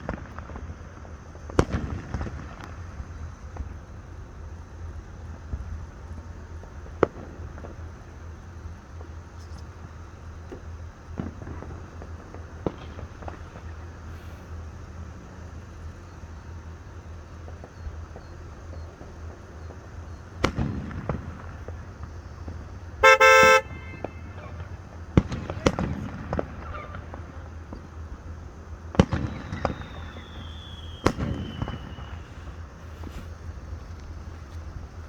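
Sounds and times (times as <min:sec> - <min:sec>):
fireworks and firecrackers banging: 0:00.0 - 0:35.0.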